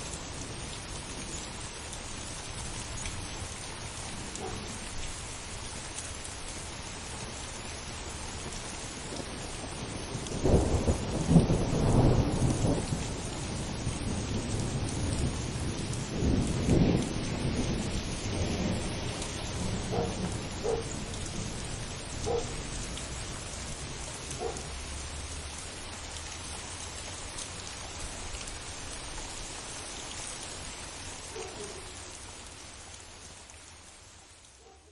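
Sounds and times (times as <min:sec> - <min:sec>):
steady rain: 0:00.0 - 0:34.9
thunder rolling and cracking: 0:10.3 - 0:21.6.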